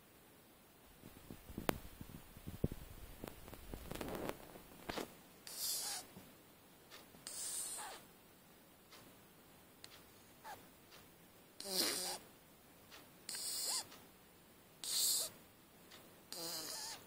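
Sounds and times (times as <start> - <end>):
puppy snoring: 5.5 - 6.1, 7.3 - 8.0, 11.6 - 12.2, 13.3 - 13.9, 14.8 - 15.3, 16.3 - 17.0.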